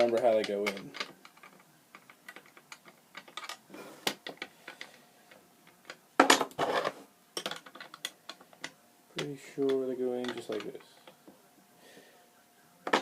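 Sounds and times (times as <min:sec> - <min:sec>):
toy parts clicking and tapping: 0:00.0 - 0:06.0, 0:07.4 - 0:11.3.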